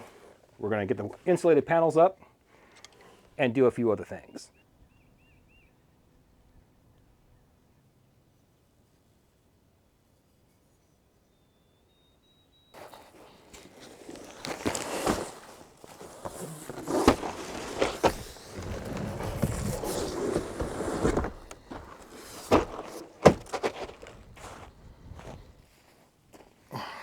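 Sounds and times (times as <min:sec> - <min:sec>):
handling noise: 0:12.8 - 0:25.4
footsteps: 0:12.8 - 0:26.5
sharp knocks and thuds: 0:14.2 - 0:24.7.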